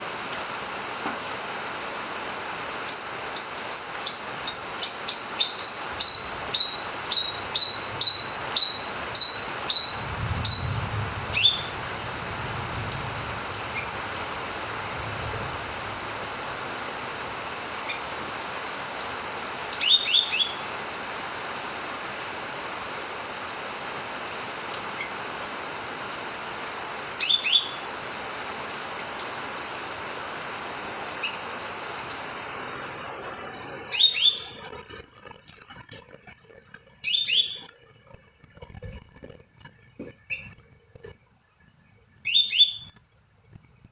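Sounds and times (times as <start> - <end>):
steady hiss: 0.0 - 36.6
bird whistling and chirping: 2.9 - 11.8, 19.8 - 20.6, 27.2 - 27.8, 33.9 - 34.6, 37.0 - 37.7, 40.3 - 40.6, 42.2 - 43.0.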